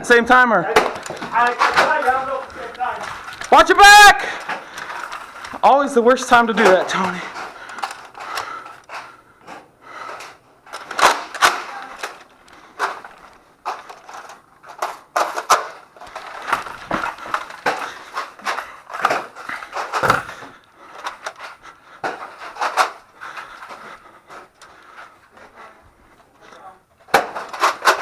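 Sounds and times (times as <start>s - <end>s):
rustling: 0.8s - 5.7s, 10.8s - 26.4s
clicks knocks and clatter: 12.8s - 20.6s.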